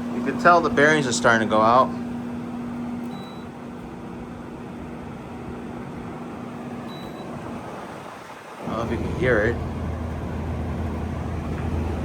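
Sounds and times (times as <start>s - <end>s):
air conditioner blower rushing air: 0.0s - 12.0s
low hum: 8.6s - 12.0s.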